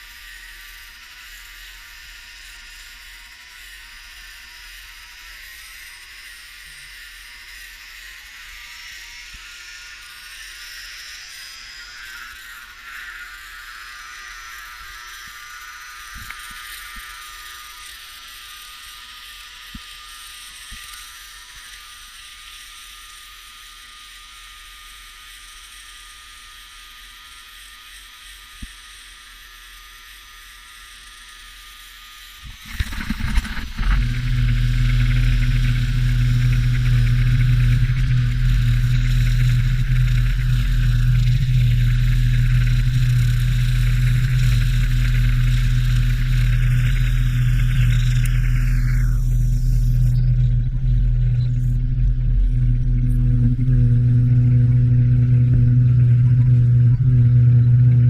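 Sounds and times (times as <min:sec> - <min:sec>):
engine starting and running: 0:32.4 - 0:58.0.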